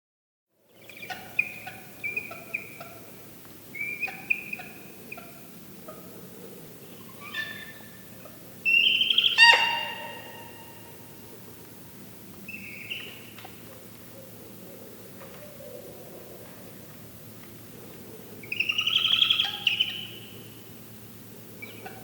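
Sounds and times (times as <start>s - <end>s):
owl squeals: 8.7s - 10.9s
owl harsh honk call: 8.7s - 11.0s.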